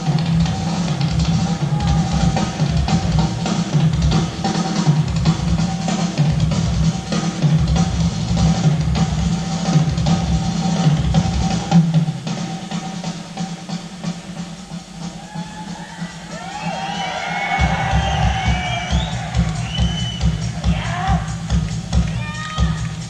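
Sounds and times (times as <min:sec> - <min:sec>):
bass drum and snare fills: 0:00.0 - 0:23.0
rock band playing live: 0:00.0 - 0:23.0
pulsing bass line: 0:17.6 - 0:23.0.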